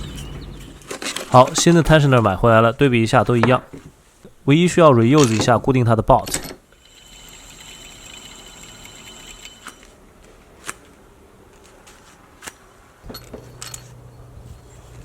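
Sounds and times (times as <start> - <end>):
low hum: 0.0 - 1.0, 13.1 - 15.0
metallic clicks and clinks: 13.1 - 14.1.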